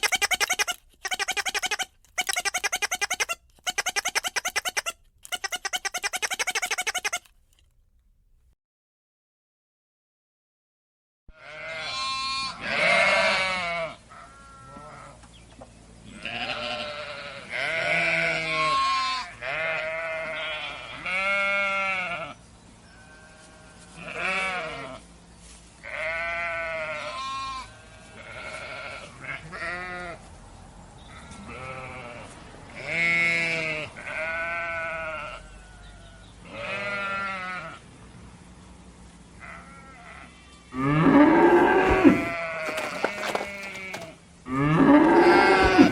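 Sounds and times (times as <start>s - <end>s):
livestock bleating: 11.3s - 15.2s, 16.1s - 25.0s, 25.8s - 30.2s, 31.1s - 37.8s, 39.4s - 45.9s.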